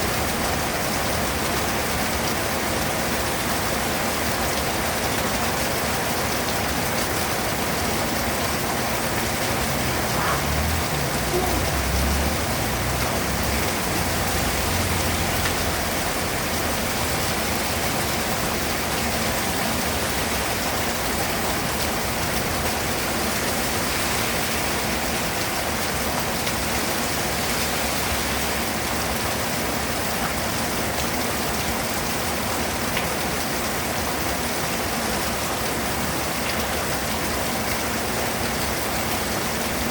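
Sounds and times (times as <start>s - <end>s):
rain falling steadily: 0.0s - 39.9s
low rumble: 9.3s - 14.6s.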